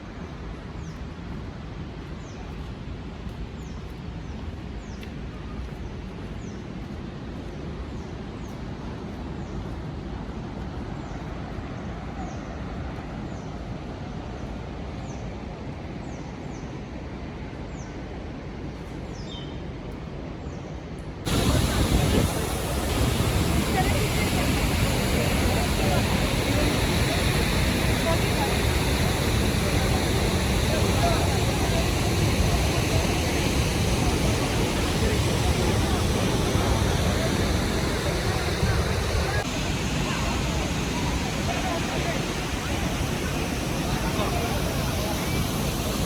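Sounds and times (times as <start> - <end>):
steady rushing noise: 21.3 - 46.0.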